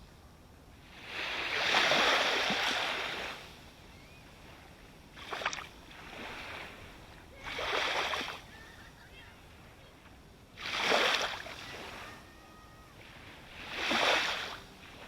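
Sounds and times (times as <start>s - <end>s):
ocean waves breaking: 0.8s - 15.0s
sharp water splash: 5.2s - 5.7s, 10.6s - 11.6s.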